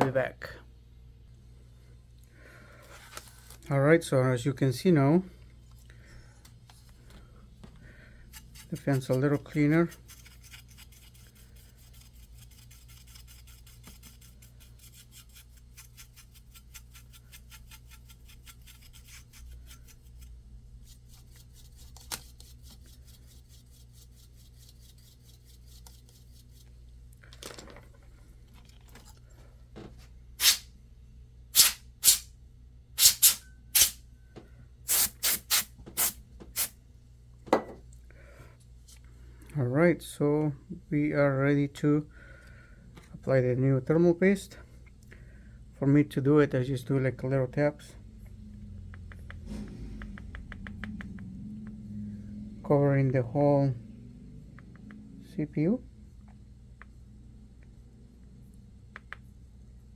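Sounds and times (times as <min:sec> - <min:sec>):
short sharp hissing bursts: 0:30.4 - 0:30.7, 0:31.6 - 0:32.3, 0:33.0 - 0:34.0, 0:34.9 - 0:36.7.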